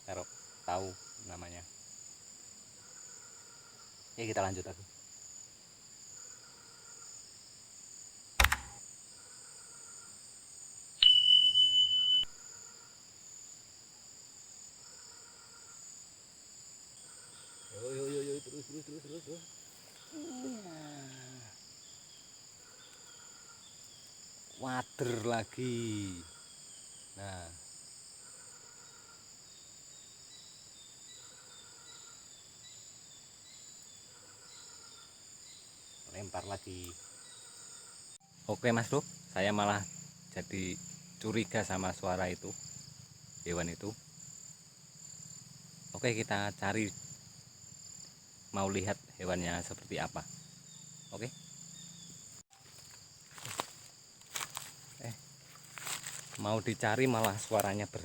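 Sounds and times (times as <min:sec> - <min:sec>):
high insect chorus: 0:00.0 - 0:58.0
sharp click: 0:08.4 - 0:08.8
short high chirp: 0:11.0 - 0:12.3
steady high beep: 0:11.0 - 0:12.4
frog-like bird call: 0:11.0 - 0:12.8.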